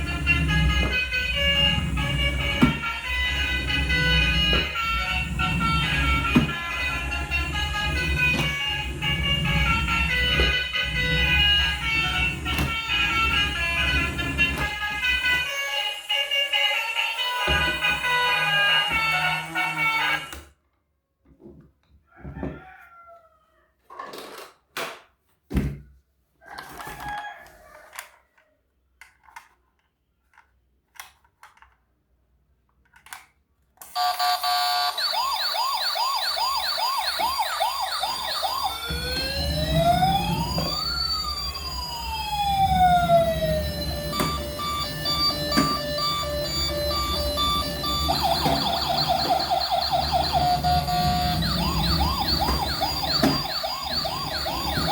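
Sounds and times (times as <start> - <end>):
toy electronic sirens: 0.0 - 20.5, 26.6 - 28.4, 33.8 - 54.9.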